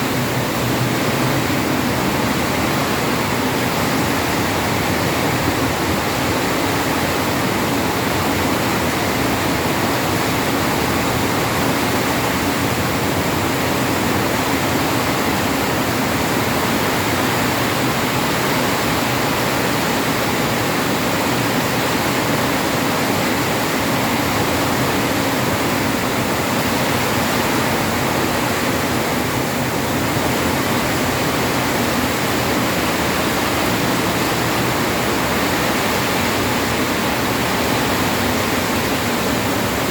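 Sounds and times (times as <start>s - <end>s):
heavy rain pouring: 0.0s - 39.9s.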